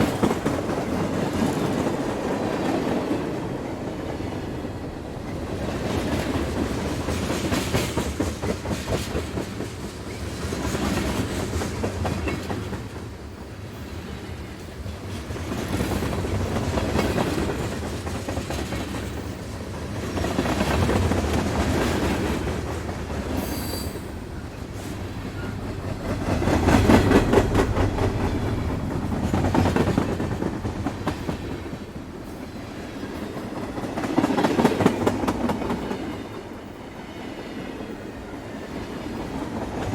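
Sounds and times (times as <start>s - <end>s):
train wheels clattering over rails: 0.0s - 39.9s
high squeal: 23.4s - 24.2s.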